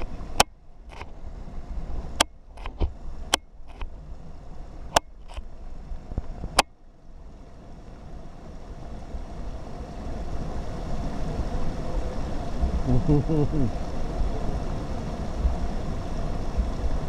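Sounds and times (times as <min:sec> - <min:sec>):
motorcycle engine running: 0:01.9 - 0:17.0.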